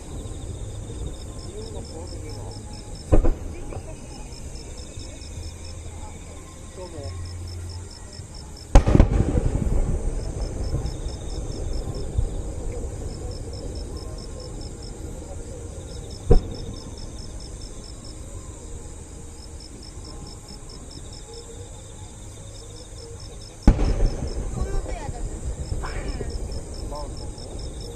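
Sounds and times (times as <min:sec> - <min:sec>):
crickets chirping: 0:00.0 - 0:27.9
firework bang: 0:03.1 - 0:03.9, 0:08.7 - 0:14.7, 0:16.2 - 0:17.1, 0:23.6 - 0:27.9.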